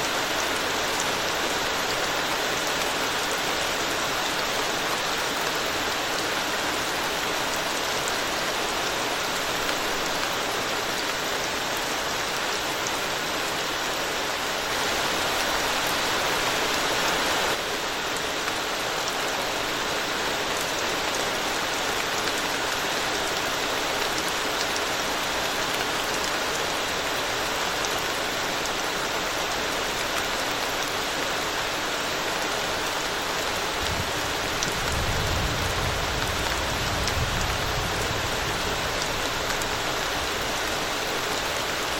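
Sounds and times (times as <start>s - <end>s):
rain falling on a road: 0.0s - 41.9s.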